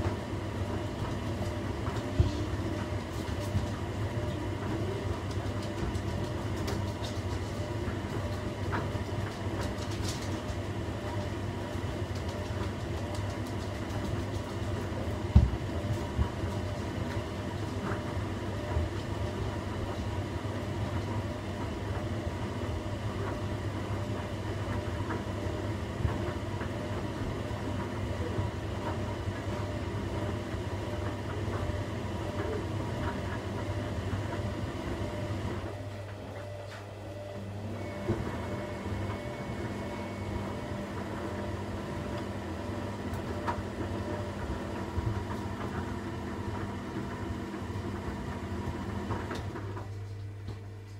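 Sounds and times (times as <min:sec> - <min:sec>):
washing machine hum and rumble: 0:00.0 - 0:50.9
thumps in washing machine drum: 0:15.0 - 0:16.7.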